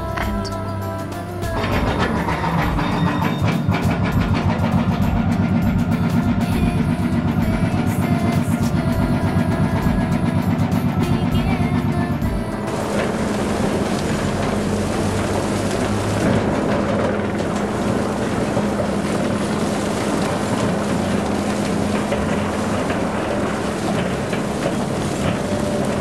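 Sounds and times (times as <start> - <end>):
heavy machinery engine drone: 0.0 - 26.0.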